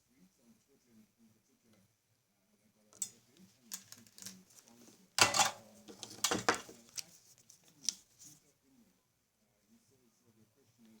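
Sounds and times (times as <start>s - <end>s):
small tools clicking and clattering: 5.2s - 7.1s.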